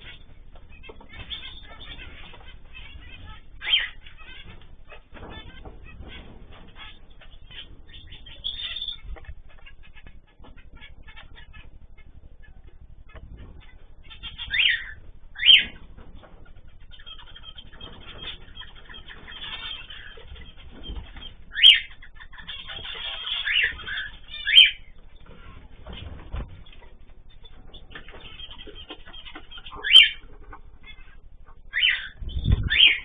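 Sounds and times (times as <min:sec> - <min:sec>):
sharp downward bird calls: 0:00.0 - 0:15.9, 0:16.5 - 0:25.1, 0:27.4 - 0:33.0
cage birds chattering softly: 0:00.0 - 0:33.0.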